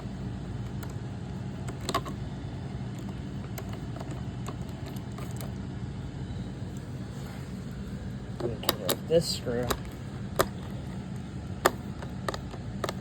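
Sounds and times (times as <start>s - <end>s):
steady low hum: 0.0s - 13.0s
plastic clicks and taps: 9.6s - 10.8s, 11.6s - 13.0s.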